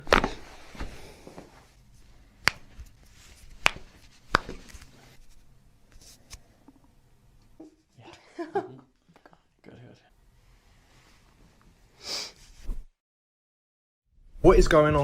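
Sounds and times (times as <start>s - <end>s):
rustling of hands and clothing: 0.0s - 6.8s, 10.5s - 12.9s.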